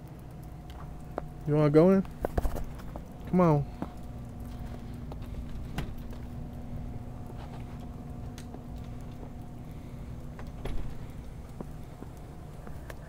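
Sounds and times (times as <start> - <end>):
steady low rumble: 0.0 - 13.0.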